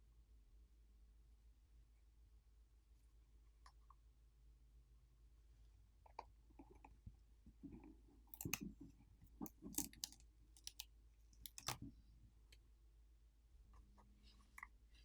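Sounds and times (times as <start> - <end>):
plastic device handling clicks: 11.5 - 11.8.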